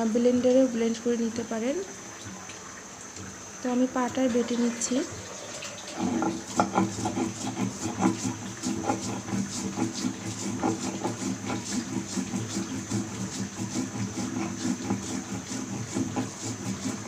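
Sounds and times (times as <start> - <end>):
stone roller grinding: 5.9 - 17.0.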